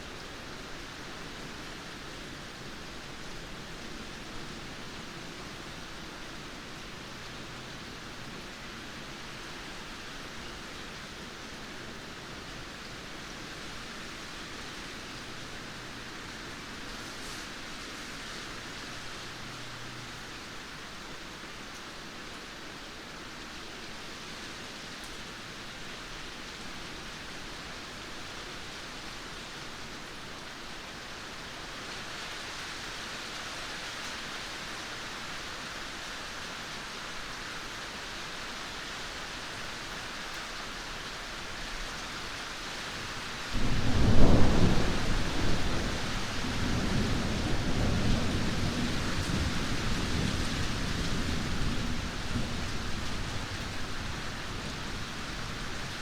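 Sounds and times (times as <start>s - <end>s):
steady rain hissing: 0.0s - 56.0s
low rumbling thunder: 43.6s - 56.0s.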